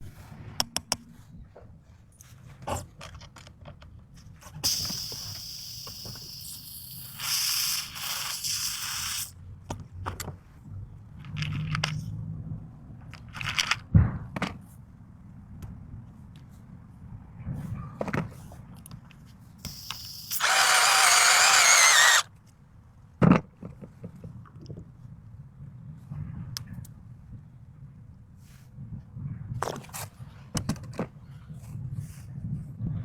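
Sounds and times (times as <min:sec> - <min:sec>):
scraping or hissing noise: 0:04.7 - 0:09.3, 0:19.7 - 0:22.2.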